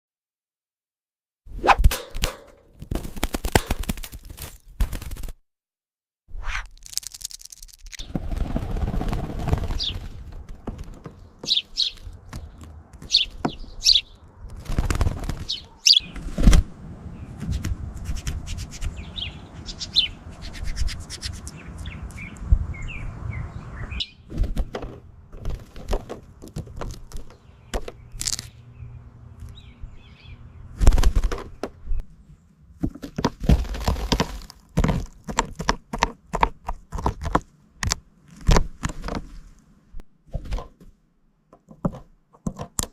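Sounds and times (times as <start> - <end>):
beak crunching into an apple: 6.6 - 8.0
parrot chirping: 15.5 - 16.1, 18.6 - 24.2.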